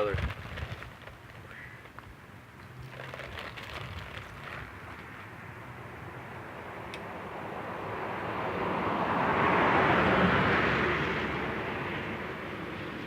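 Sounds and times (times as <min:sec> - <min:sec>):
vehicle passing by: 0:05.4 - 0:13.0.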